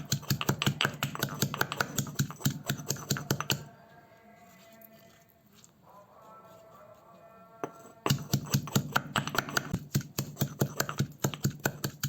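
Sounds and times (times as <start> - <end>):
pestle pounding garlic: 0.0 - 3.7, 7.6 - 12.0.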